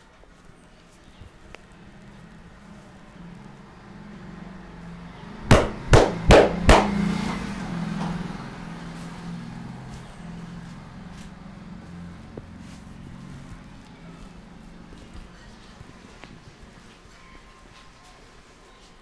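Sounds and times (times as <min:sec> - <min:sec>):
hard hand slaps: 0:05.4 - 0:07.0.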